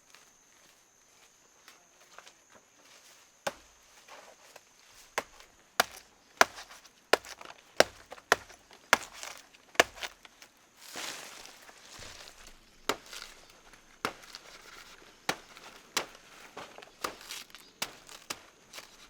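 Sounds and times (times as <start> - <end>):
blade chopping into wood: 5.2 - 10.3, 12.0 - 19.0.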